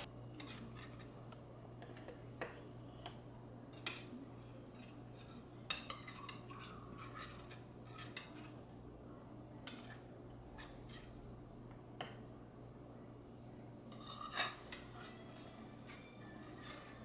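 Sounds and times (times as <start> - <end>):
utensil scraping a pan: 0.0 - 1.1, 3.8 - 8.6, 9.7 - 11.2, 13.9 - 17.0.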